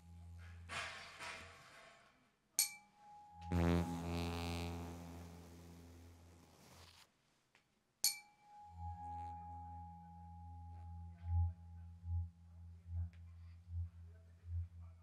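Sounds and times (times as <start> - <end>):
tuning fork ringing: 2.7 - 5.7, 8.1 - 12.4
pulsing low hum: 3.6 - 6.6.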